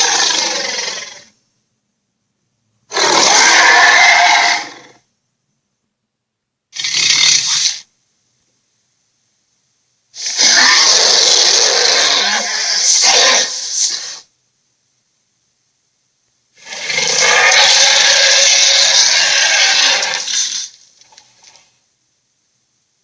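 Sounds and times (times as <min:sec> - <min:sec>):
dragon growl: 0:10.2 - 0:14.2, 0:16.6 - 0:20.4.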